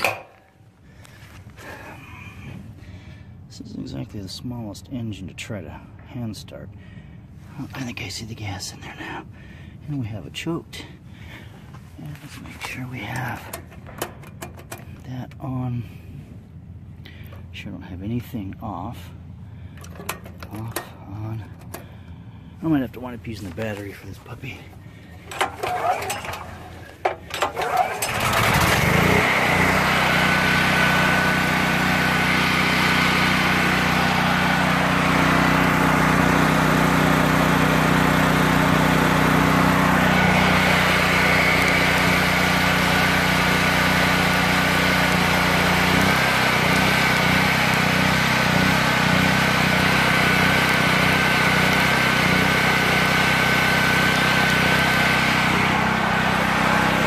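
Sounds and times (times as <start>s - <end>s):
recoil starter pull: 0.0s - 0.6s, 13.1s - 15.1s, 19.7s - 22.0s, 24.7s - 57.0s
generator engine running: 0.0s - 3.5s, 10.5s - 57.0s.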